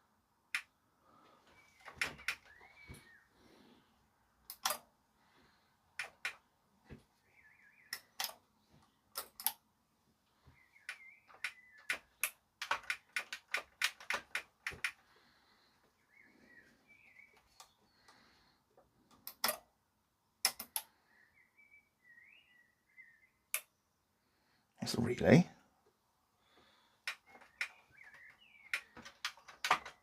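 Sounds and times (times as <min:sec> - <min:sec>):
power switch and relay clicks: 0:04.5 - 0:04.9, 0:19.1 - 0:19.6.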